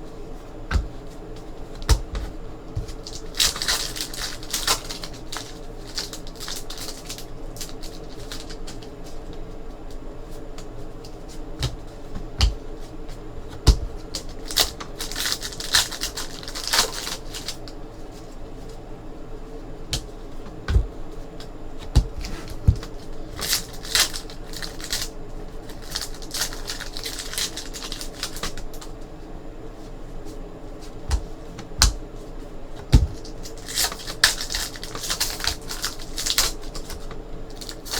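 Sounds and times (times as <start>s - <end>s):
foil wrappers crinkling and tearing: 2.8s - 9.1s, 13.9s - 18.2s, 22.5s - 28.9s, 32.8s - 37.9s
cards knocked on a table: 32.8s - 33.2s.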